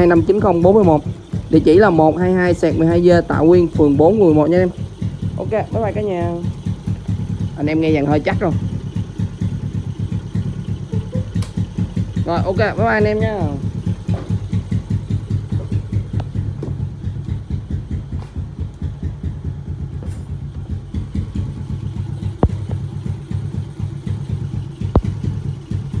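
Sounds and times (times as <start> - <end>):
motorcycle engine idling: 0.0 - 26.0
sharp clicks: 22.4 - 22.8.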